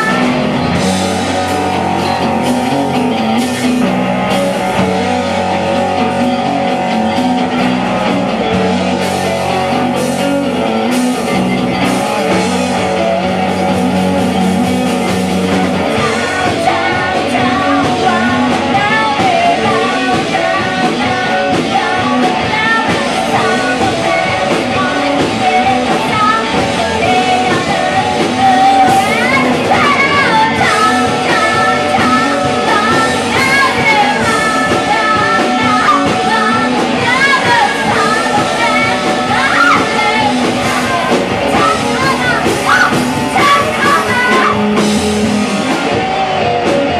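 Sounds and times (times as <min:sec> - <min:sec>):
person singing: 0:00.0 - 0:03.7, 0:11.3 - 0:45.1
drums: 0:00.0 - 0:46.9
electric guitar: 0:00.0 - 0:46.9.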